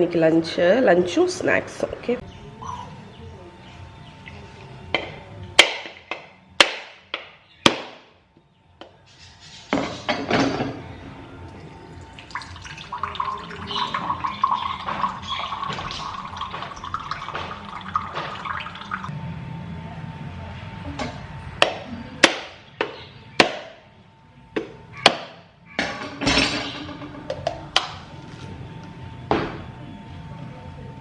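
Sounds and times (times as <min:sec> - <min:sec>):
water running: 0:11.5 - 0:19.1.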